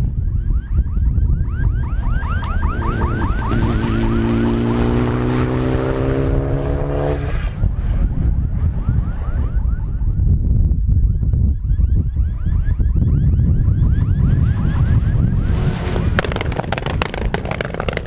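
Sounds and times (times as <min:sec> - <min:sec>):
wind buffeting microphone: 0:00.0 - 0:18.0
race car engine at high revs: 0:02.0 - 0:07.6, 0:14.3 - 0:18.0.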